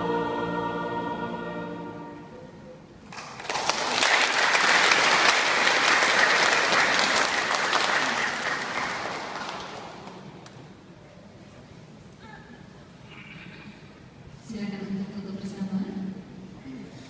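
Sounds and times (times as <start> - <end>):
audience applauding: 3.1 - 10.3.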